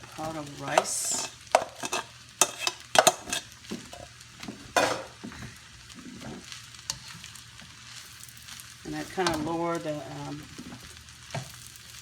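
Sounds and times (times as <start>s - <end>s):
utensil scraping and clinking in pan: 0.0s - 5.4s, 6.1s - 8.1s
low sizzle: 0.0s - 12.0s.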